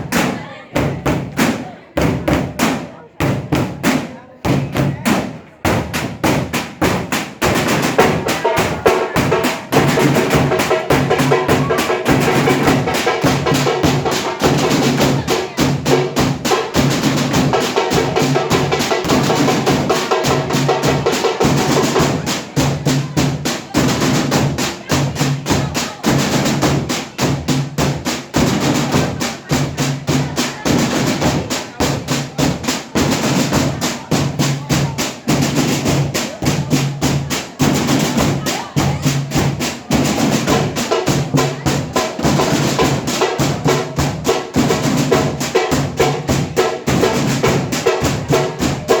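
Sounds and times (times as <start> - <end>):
percussion ensemble drumming: 0.0 - 49.0.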